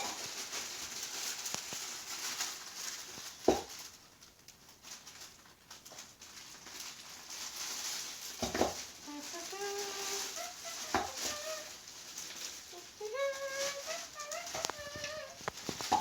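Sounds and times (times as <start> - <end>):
handling rustling: 0.0 - 16.0.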